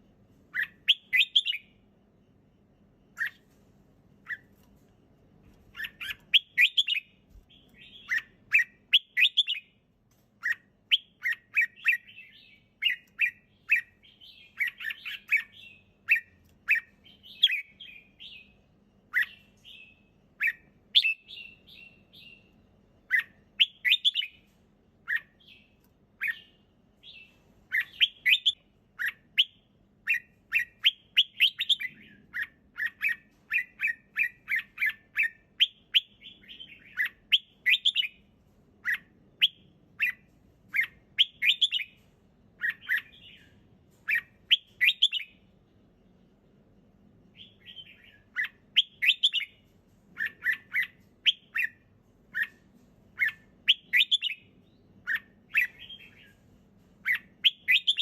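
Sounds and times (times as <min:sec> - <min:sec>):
bird singing whistled phrases: 0:00.6 - 0:01.7, 0:05.8 - 0:09.7, 0:10.4 - 0:18.5, 0:19.1 - 0:22.4, 0:23.1 - 0:24.4, 0:27.1 - 0:38.2, 0:40.8 - 0:42.0, 0:44.1 - 0:45.4, 0:47.4 - 0:49.6, 0:50.2 - 0:52.6, 0:53.2 - 0:56.4, 0:57.1 - 0:58.0.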